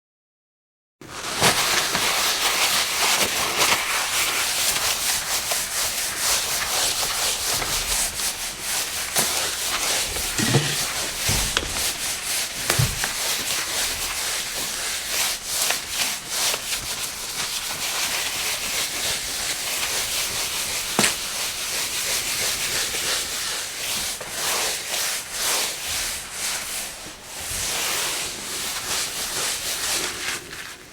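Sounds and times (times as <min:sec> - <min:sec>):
cloth wiping a countertop: 0:01.2 - 0:20.8, 0:21.7 - 0:30.9.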